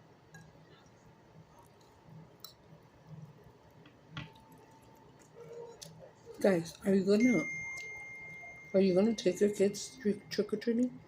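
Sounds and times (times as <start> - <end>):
faint chewing: 0.4 - 6.9.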